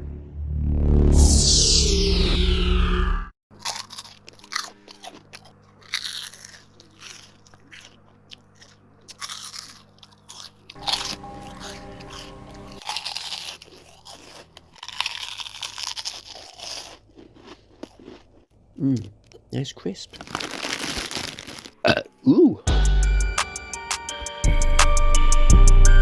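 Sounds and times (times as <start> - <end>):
crisps crunching: 3.5 - 22.2
quiet background music: 3.7 - 15.4.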